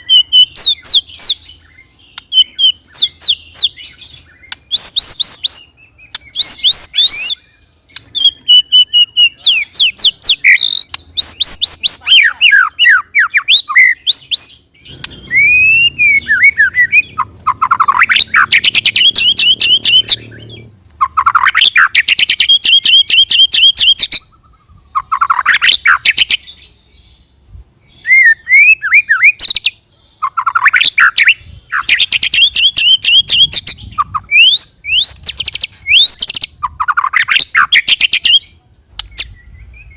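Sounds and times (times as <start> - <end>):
bird singing fast trills: 0.0 - 39.9.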